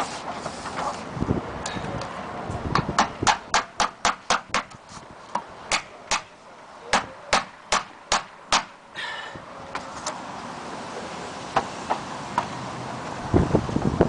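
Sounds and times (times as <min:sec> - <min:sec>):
hammer striking nails in metal: 0:02.8 - 0:04.8, 0:06.9 - 0:08.7.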